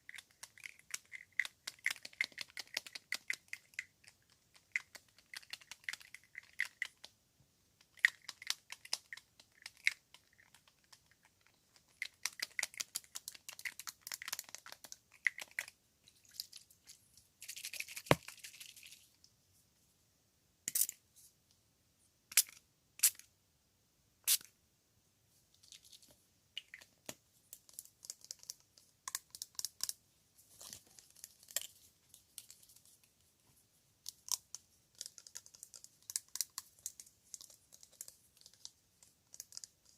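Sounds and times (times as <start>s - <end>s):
crinkly clicking: 25.5s - 30.0s, 34.1s - 39.9s.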